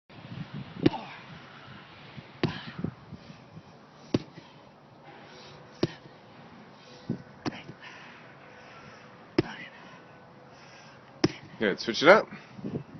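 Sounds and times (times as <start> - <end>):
sledgehammer thuds on rubber: 2.4 - 2.8, 4.1 - 4.4, 5.8 - 6.1, 9.4 - 9.7, 11.2 - 11.5.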